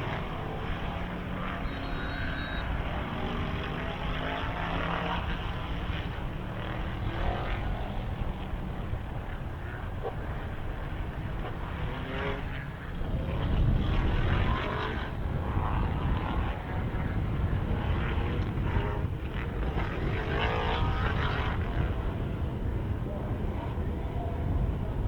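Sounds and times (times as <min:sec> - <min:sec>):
race car passing: 0:00.0 - 0:24.5
race car engines droning: 0:00.0 - 0:25.0.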